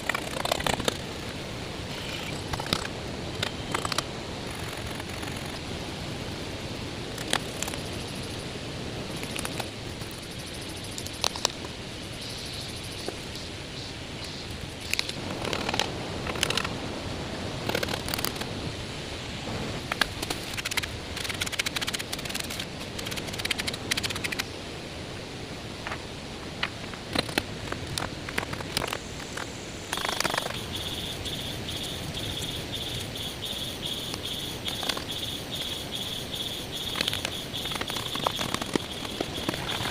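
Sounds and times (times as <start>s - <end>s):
branches and leaves rustling: 0.0s - 39.9s
steady outdoor hiss: 0.0s - 39.9s
insect trilling: 9.1s - 16.7s, 28.8s - 39.9s.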